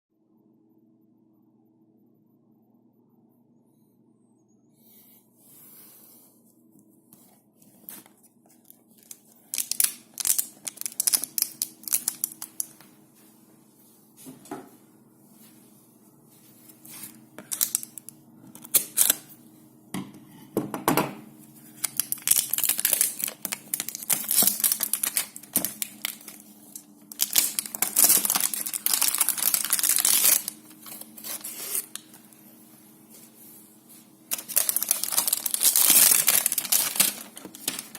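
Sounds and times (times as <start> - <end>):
packaging tearing and crinkling: 7.8 - 12.7, 17.0 - 19.3, 21.8 - 32.2, 34.3 - 37.9.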